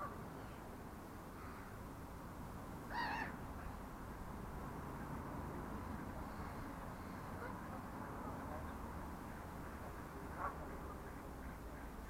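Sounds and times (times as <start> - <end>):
steady background noise: 0.0 - 12.0
gull calling: 2.9 - 3.4.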